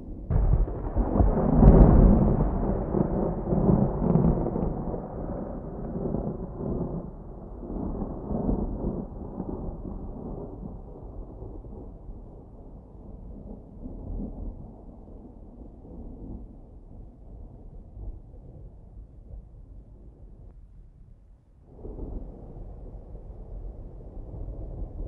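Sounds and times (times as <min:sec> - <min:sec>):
rolling thunder: 0:00.0 - 0:18.7.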